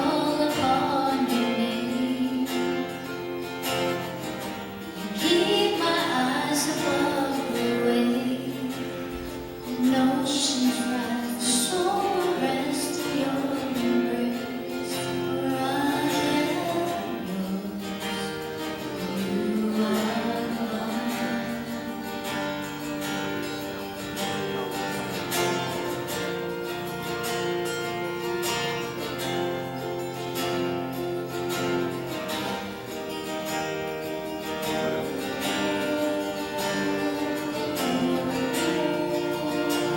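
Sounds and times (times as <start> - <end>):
person singing: 0.0 - 3.5, 4.9 - 22.7, 34.1 - 39.9
acoustic guitar strumming: 0.0 - 39.9.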